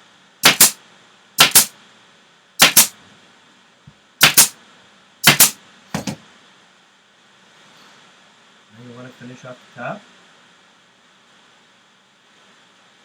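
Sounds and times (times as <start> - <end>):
staple gun firing: 0.4 - 0.8, 1.4 - 1.7, 2.6 - 2.9, 4.2 - 4.5, 5.2 - 5.6.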